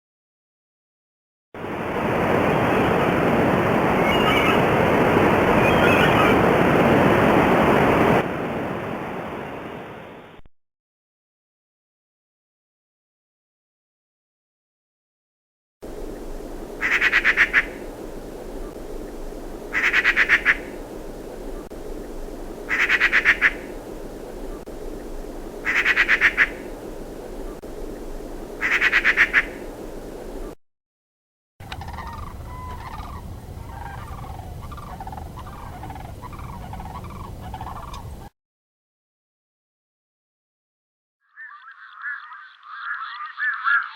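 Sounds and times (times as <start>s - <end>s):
bird calling: 3.8s - 6.6s, 16.2s - 30.6s, 31.6s - 38.3s, 41.3s - 43.9s
low background hiss: 15.9s - 30.6s
steady low rumble: 17.7s - 19.8s
frog pulsed trills: 41.3s - 43.9s.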